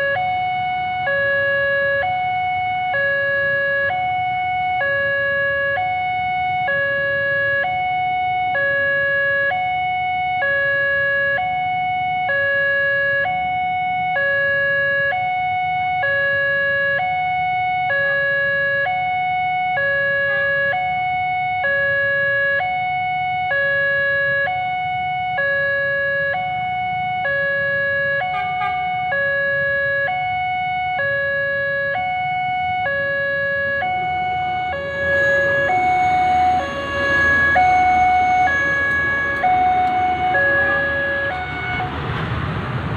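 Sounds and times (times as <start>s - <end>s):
level crossing two-tone siren: 0.0s - 42.0s
low road traffic rumble: 0.0s - 42.9s.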